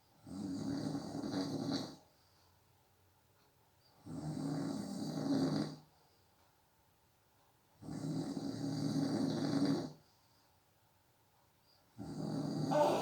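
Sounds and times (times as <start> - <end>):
person snoring: 12.7 - 13.0.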